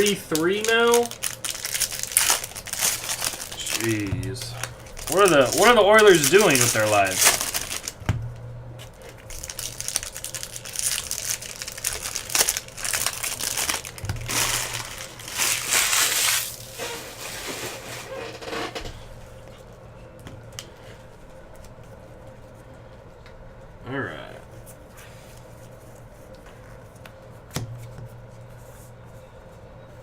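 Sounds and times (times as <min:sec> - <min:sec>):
card pack wrappers tearing: 0:00.0 - 0:08.0, 0:08.9 - 0:18.5
cards shuffled: 0:10.9 - 0:17.9.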